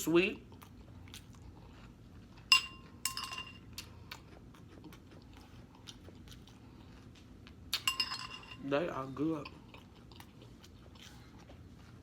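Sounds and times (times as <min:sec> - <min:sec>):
spoon clinking against bowl: 0:02.5 - 0:03.6, 0:07.8 - 0:08.6.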